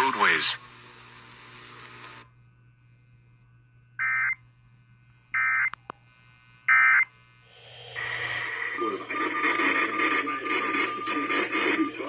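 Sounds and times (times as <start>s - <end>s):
radio static hiss: 0.0s - 3.2s, 5.3s - 12.0s
digital data tone bursts: 6.7s - 12.0s.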